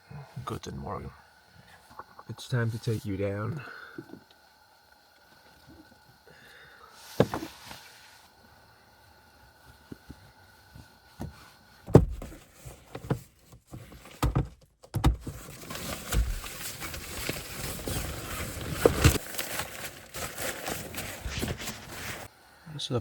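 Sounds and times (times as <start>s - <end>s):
knocks and thumps of gear: 11.2s - 19.2s
rustling near microphone: 15.2s - 22.3s.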